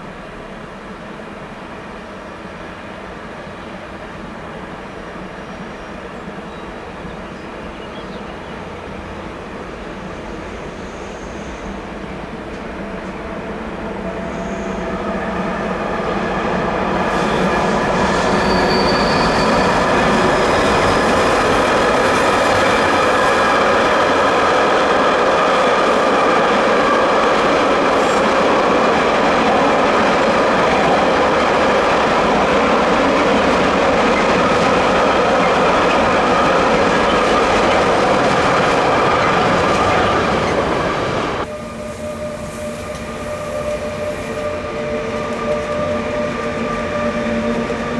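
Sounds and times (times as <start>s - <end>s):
train wheels squealing: 10.0s - 12.3s, 13.9s - 16.1s, 16.7s - 26.6s, 27.5s - 28.6s, 29.2s - 47.9s.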